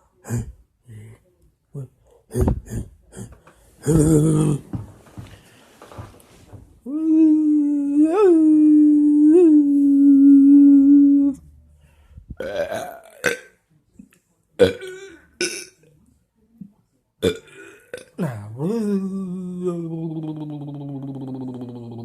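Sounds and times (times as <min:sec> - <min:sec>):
low drawn-out voiced sound: 0:00.0 - 0:04.8, 0:06.8 - 0:11.5
person humming: 0:01.8 - 0:04.8, 0:06.8 - 0:11.4, 0:18.2 - 0:22.0
burp-like vocal croaks: 0:12.4 - 0:13.6, 0:14.6 - 0:15.8, 0:17.2 - 0:18.6.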